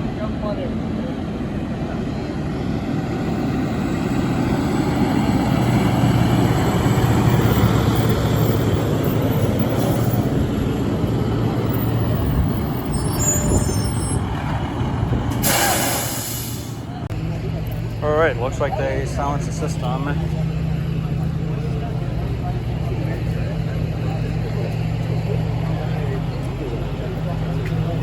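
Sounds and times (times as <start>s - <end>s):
fire engine diesel engine rumbling: 0.0s - 28.0s
brief high squeal: 12.8s - 14.2s, 15.4s - 16.7s
short hiss: 15.4s - 16.8s.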